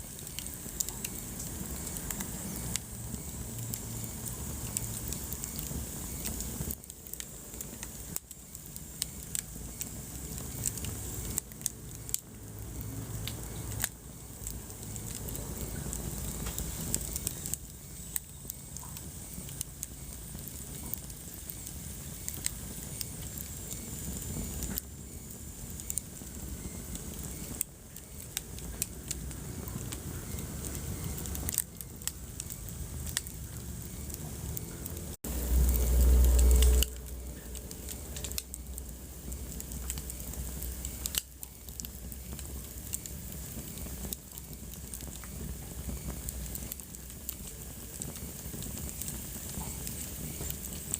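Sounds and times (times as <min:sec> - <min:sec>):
wood fire crackling: 0:00.0 - 0:50.9
loud low rumble: 0:35.2 - 0:39.5.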